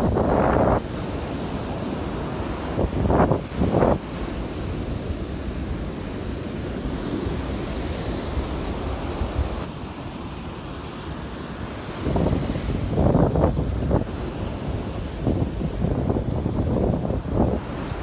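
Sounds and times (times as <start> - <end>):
wind buffeting microphone: 0.0 - 9.7, 11.6 - 18.0
surf washing onto sandy beach: 0.0 - 18.0.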